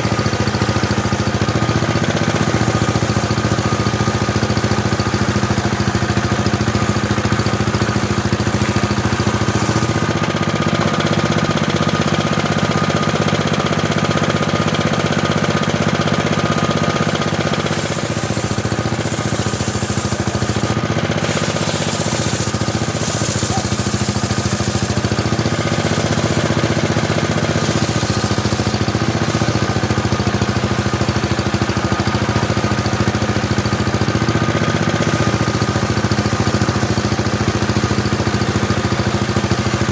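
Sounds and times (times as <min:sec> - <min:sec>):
table saw running: 0:00.0 - 0:39.9
saw blade cutting wood: 0:06.5 - 0:11.2, 0:15.1 - 0:30.1.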